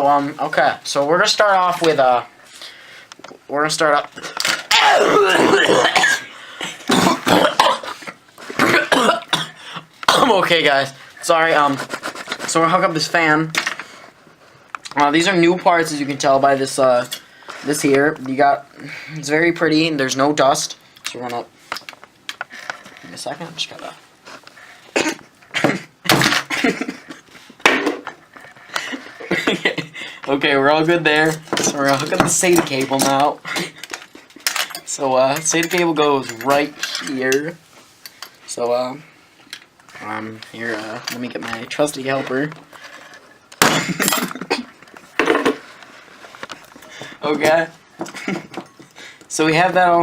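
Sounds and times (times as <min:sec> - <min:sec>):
man coughing hard: 0:04.7 - 0:10.4, 0:24.9 - 0:27.2, 0:43.6 - 0:44.8
hard objects clattering: 0:40.4 - 0:49.2.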